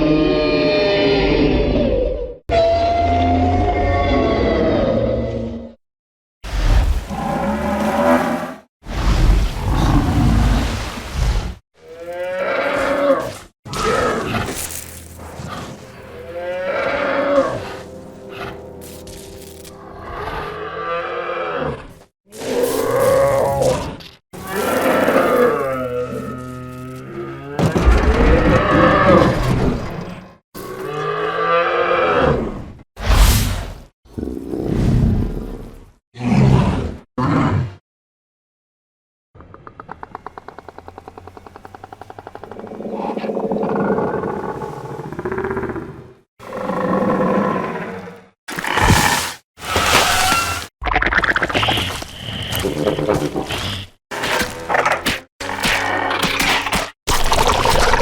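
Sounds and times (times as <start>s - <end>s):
creature growling call: 19.8s - 29.5s.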